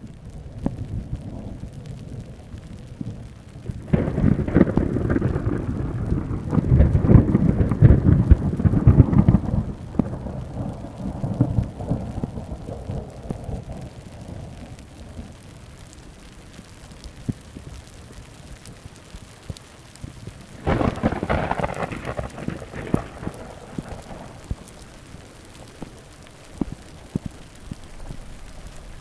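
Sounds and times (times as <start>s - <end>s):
steady rain: 0.0s - 29.0s
thunder rumbling: 0.0s - 29.0s.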